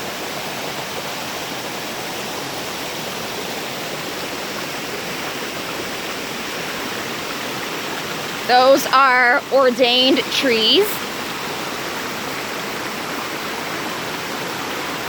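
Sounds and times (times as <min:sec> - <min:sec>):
stream flowing over rocks: 0:00.0 - 0:15.0.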